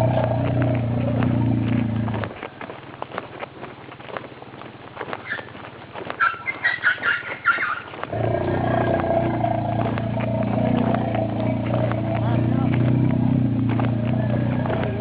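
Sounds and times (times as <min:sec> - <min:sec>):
motor engine running: 0:00.0 - 0:03.0, 0:08.0 - 0:15.0
elephant squeaking and chirping: 0:05.2 - 0:05.5, 0:06.2 - 0:08.0.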